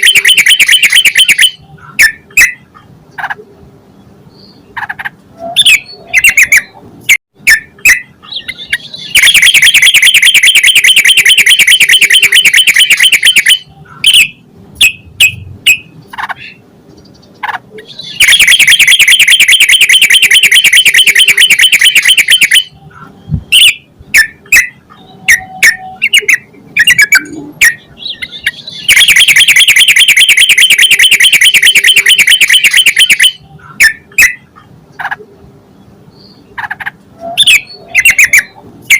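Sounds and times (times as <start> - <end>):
bird chirps and calls: 7.5 - 30.0, 31.8 - 38.6.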